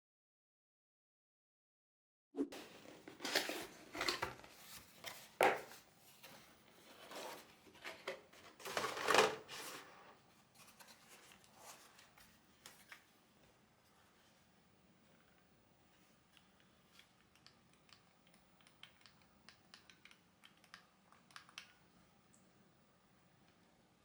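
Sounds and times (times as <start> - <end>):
rustling and scraping of objects: 2.5 - 14.5.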